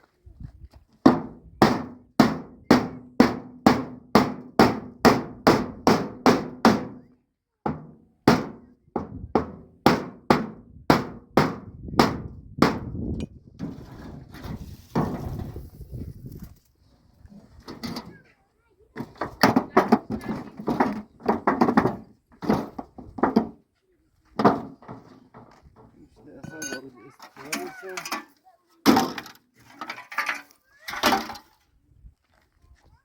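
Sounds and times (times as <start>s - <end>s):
scraping: 13.6s - 18.4s.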